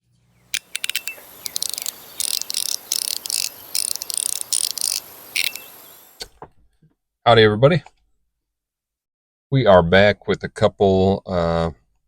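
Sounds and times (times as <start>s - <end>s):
fidget slider scraping slides: 0.5s - 6.2s
fidget slider clicks: 0.5s - 6.3s.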